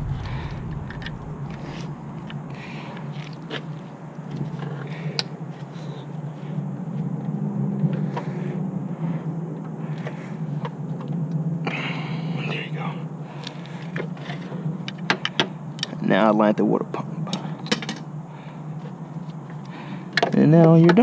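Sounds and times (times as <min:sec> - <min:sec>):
steady low rumble: 0:00.0 - 0:03.5.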